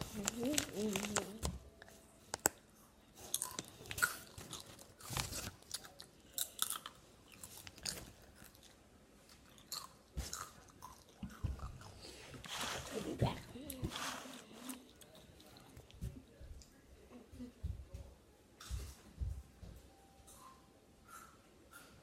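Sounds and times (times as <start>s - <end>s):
person chewing crunchy chips: 3.2s - 11.9s.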